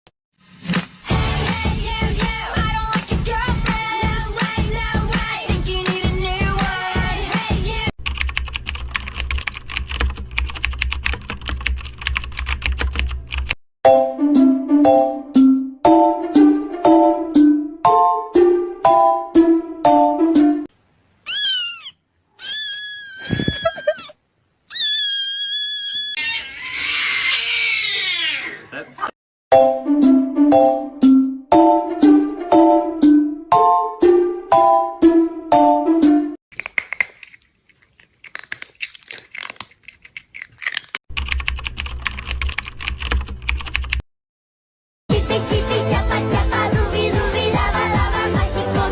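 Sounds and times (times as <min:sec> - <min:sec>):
fast keyboard typing: 0:08.0 - 0:13.6, 0:40.8 - 0:44.0
cat meowing: 0:21.2 - 0:29.1
harsh cat cry: 0:21.2 - 0:29.1
bright musical notes: 0:29.5 - 0:36.3.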